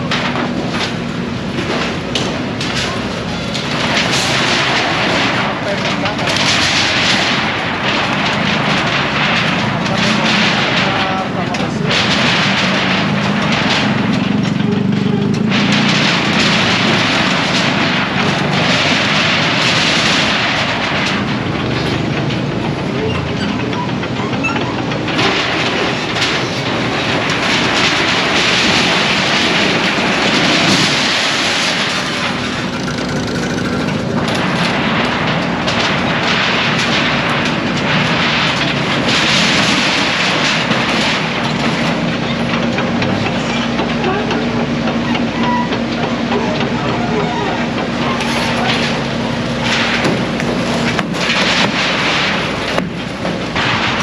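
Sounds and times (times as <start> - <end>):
demolition knocking and crashing: 0.0 - 54.0.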